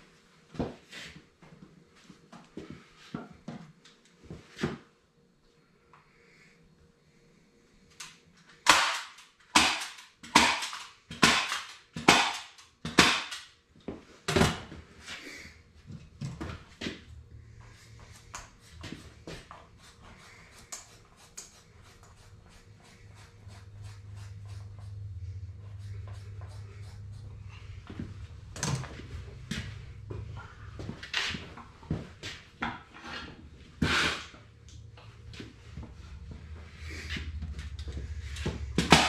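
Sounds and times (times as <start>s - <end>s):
low hum: 14.9s - 39.0s.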